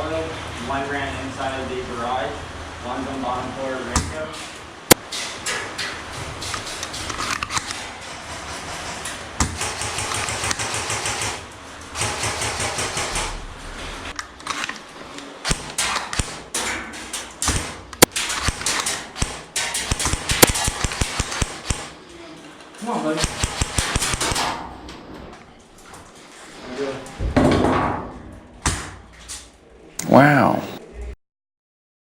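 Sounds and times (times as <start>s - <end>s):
airsoft automatic fire: 9.6s - 11.4s, 17.6s - 22.0s, 23.2s - 24.6s
airsoft single shots: 23.2s - 24.5s.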